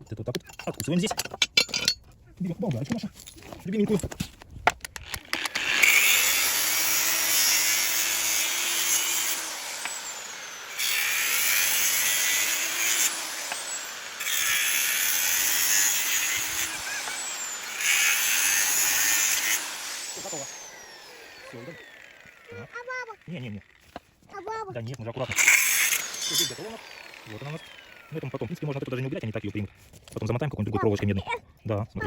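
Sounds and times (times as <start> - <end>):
angle grinder cutting copper: 5.0 - 29.8.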